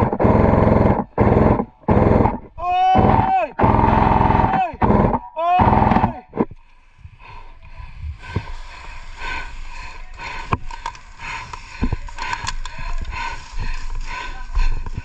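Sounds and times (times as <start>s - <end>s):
sharp clicks and knocks: 10.4s - 13.2s.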